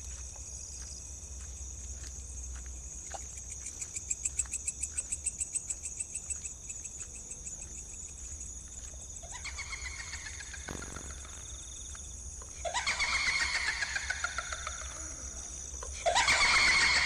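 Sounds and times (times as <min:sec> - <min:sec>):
high-pitched cricket buzz: 0:00.0 - 0:17.0
rapid pulsing insect trill: 0:00.0 - 0:17.0.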